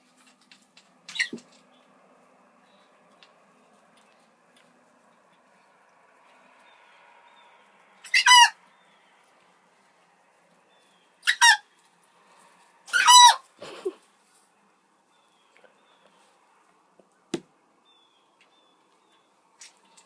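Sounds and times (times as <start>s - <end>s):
chicken squeaky calls: 1.1s - 1.5s, 8.0s - 8.6s, 11.2s - 11.8s, 12.9s - 14.0s.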